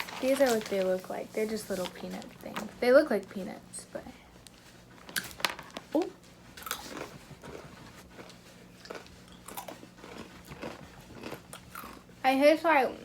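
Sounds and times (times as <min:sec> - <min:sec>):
person chewing crunchy peanuts: 0:06.6 - 0:12.2.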